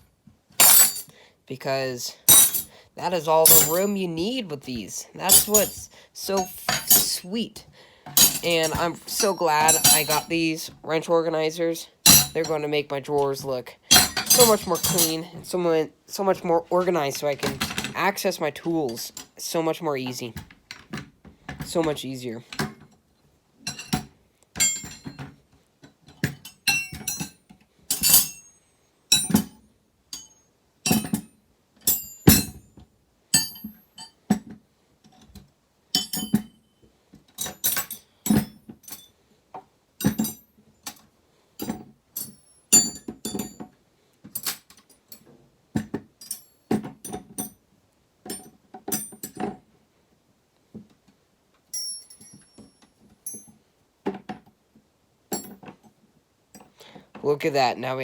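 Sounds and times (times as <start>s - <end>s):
steel wrenches clinking: 0.6s - 1.1s, 2.2s - 2.7s, 3.4s - 4.4s, 5.2s - 7.4s, 8.2s - 10.6s, 12.1s - 12.6s, 13.9s - 15.3s, 23.6s - 25.2s, 26.3s - 32.6s, 33.4s - 34.2s, 36.0s - 36.6s, 40.0s - 41.0s, 41.6s - 43.6s, 46.2s - 47.6s, 51.8s - 53.6s.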